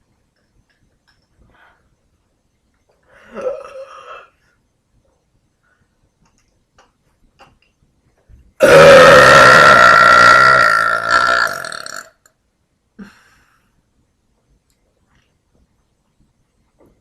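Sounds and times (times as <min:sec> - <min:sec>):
woman burping: 0:03.2 - 0:04.3, 0:08.6 - 0:12.2.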